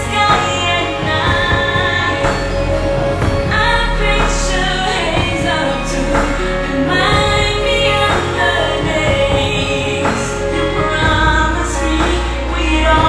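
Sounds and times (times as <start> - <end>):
instrumental backing: 0.0 - 13.0
woman singing slow melody: 0.0 - 13.0.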